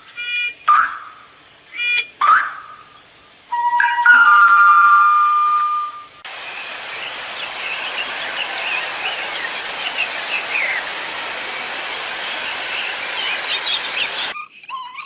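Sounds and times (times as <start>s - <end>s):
outdoor hiss: 6.2s - 14.4s
small birds chirping: 6.3s - 15.0s.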